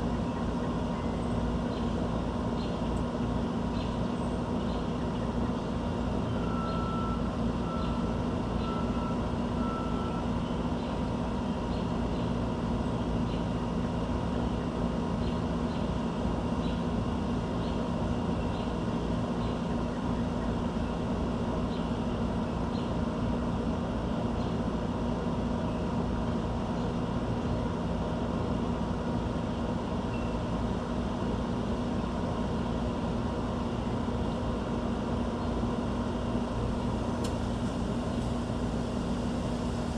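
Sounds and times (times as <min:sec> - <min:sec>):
low mechanical drone: 0:00.0 - 0:39.9.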